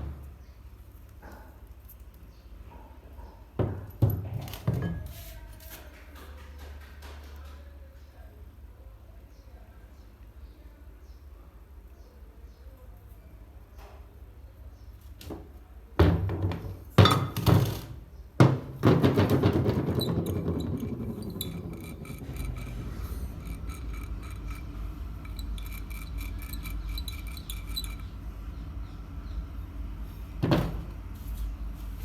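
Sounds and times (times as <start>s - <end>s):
metal knocks on fan motor: 18.4s - 28.1s, 30.4s - 31.0s.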